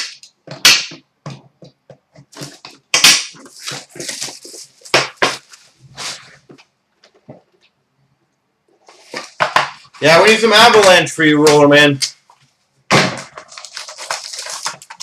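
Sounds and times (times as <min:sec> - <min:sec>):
card packs crinkling and rustling: 0:02.3 - 0:06.6, 0:13.2 - 0:15.0.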